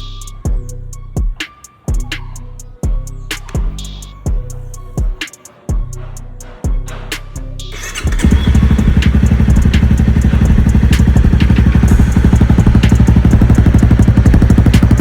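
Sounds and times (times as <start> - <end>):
motorcycle engine idling: 7.8 - 15.0.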